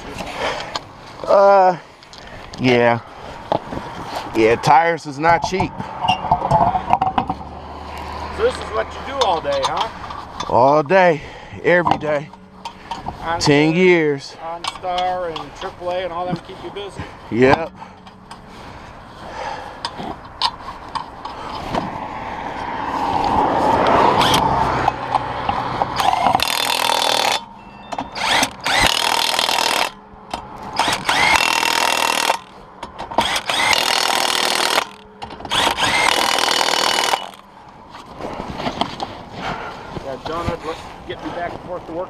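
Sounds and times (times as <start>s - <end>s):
impact wrench on lug nuts: 5.2s - 7.5s, 23.1s - 37.6s.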